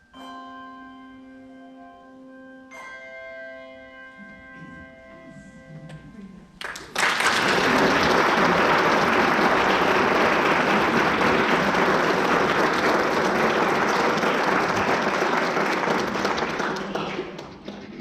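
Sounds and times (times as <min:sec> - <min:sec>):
audience applauding: 0:06.6 - 0:18.0.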